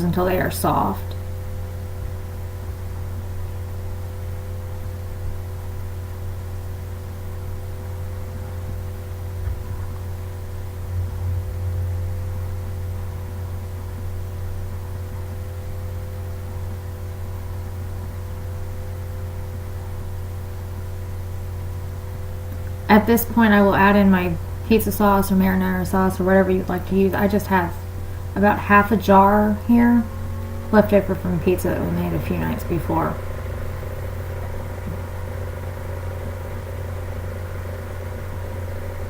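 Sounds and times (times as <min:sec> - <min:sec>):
low hum: 0:00.0 - 0:39.0
faint higher tones: 0:10.1 - 0:15.2.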